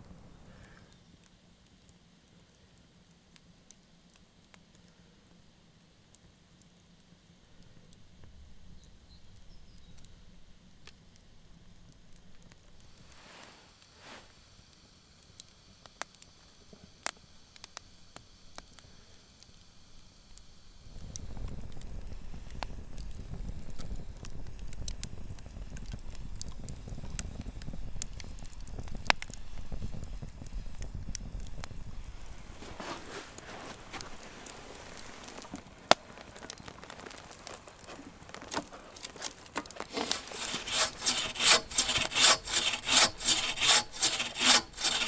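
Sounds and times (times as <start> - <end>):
campfire crackling and popping: 0.0 - 45.0.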